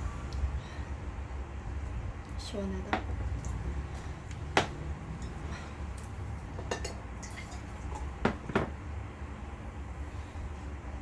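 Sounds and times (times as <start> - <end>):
glassware and cutlery clinking: 6.6 - 8.7.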